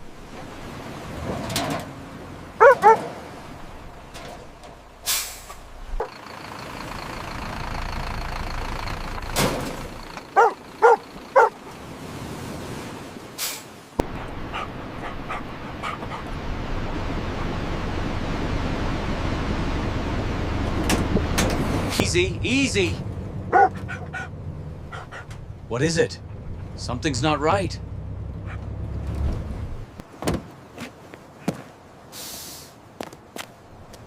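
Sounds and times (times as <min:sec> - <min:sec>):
vehicle background noise: 0:00.0 - 0:34.0
dog barking: 0:02.6 - 0:03.1, 0:10.3 - 0:11.6, 0:23.5 - 0:24.3, 0:28.4 - 0:28.7
short bursts of hiss: 0:32.1 - 0:32.8.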